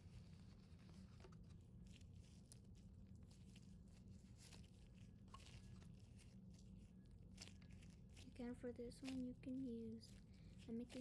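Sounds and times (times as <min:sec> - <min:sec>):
low steady hum: 0:00.0 - 0:11.0
slime squishing and crackling: 0:01.8 - 0:11.0.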